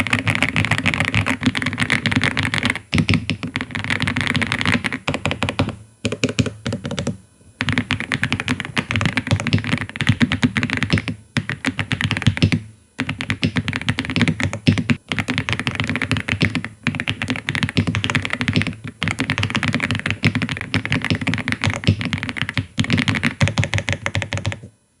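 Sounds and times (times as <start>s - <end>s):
mechanical keyboard typing: 0.0s - 24.7s.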